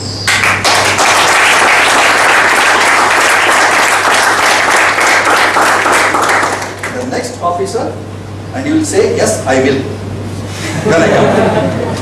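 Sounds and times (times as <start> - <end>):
audience applauding: 0.3 - 7.1.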